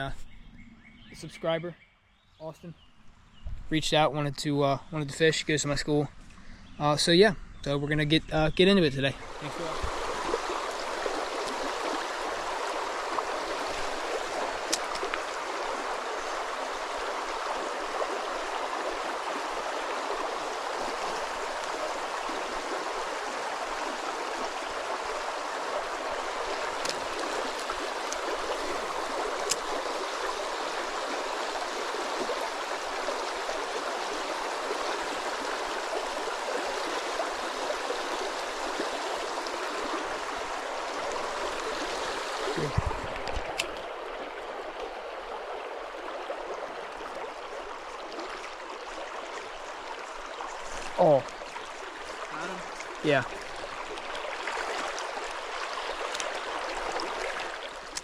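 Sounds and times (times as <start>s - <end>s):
creek water running over rocks: 8.6s - 58.0s
faint clicks: 14.6s - 15.4s, 56.1s - 56.4s.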